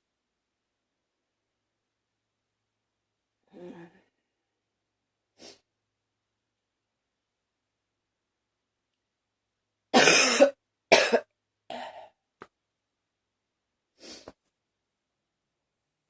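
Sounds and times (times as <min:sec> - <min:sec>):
woman coughing: 0:10.0 - 0:12.1.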